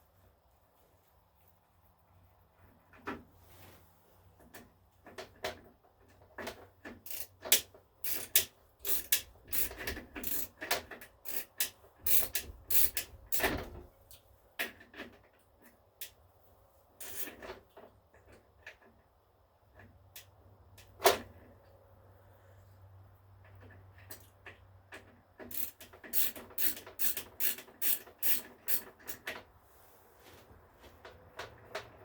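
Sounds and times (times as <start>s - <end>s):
clatter of tools and metal parts: 4.4s - 16.2s, 17.0s - 21.5s, 23.4s - 29.6s.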